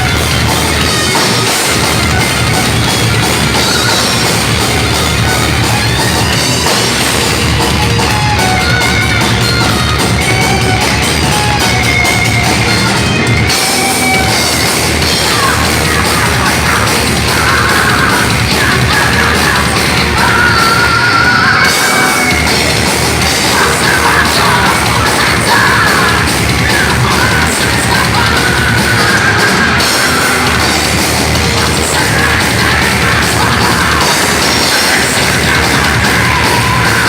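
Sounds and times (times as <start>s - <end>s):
distorted electric guitars: 0.0s - 37.0s
drums: 0.0s - 37.0s
person yelling vocals: 23.5s - 30.6s.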